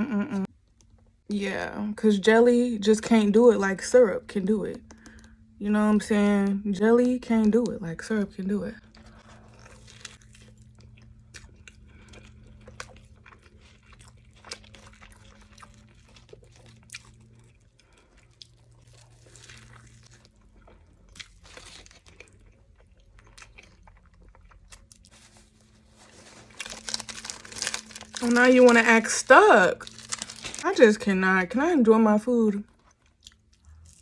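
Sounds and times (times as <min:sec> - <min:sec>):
person chewing and crunching food: 0:08.8 - 0:30.9, 0:32.6 - 0:34.0.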